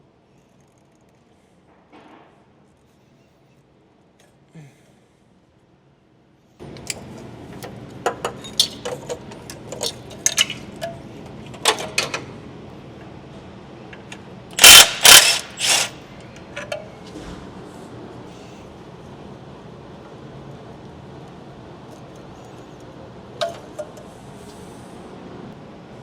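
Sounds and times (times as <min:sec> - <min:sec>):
tools and metal parts clicking: 0:06.8 - 0:12.2, 0:14.6 - 0:16.8.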